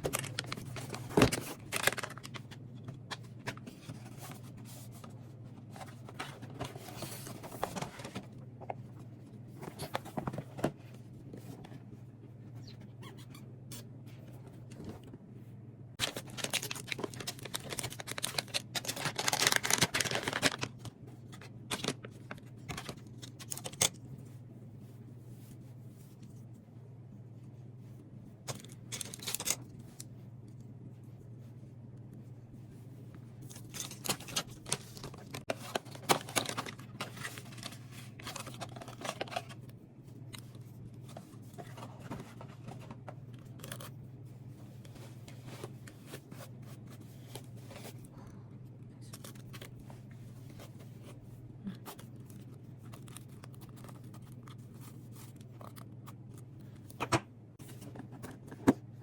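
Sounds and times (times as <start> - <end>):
rustling and clicking handling: 0.0 - 11.9, 16.0 - 24.0, 28.4 - 30.8, 33.4 - 44.0
steady low hum: 0.0 - 59.0.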